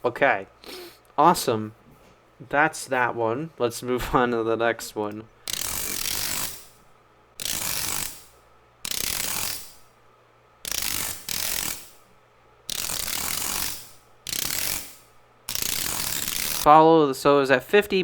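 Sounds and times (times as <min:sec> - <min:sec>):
harsh mechanical clatter: 0:05.5 - 0:06.8, 0:07.4 - 0:09.8, 0:10.6 - 0:12.1, 0:12.7 - 0:16.7.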